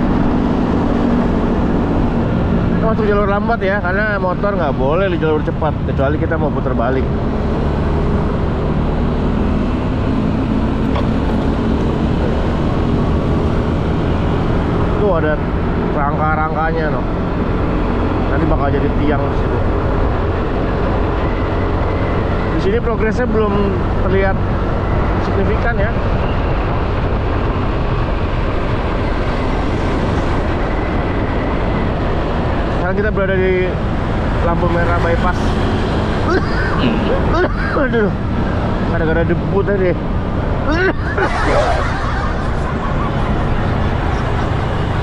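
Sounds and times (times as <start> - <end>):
rushing wind: 0.0 - 45.0
scooter engine and traffic rumble: 0.0 - 45.0
faint engine hum: 23.6 - 45.0.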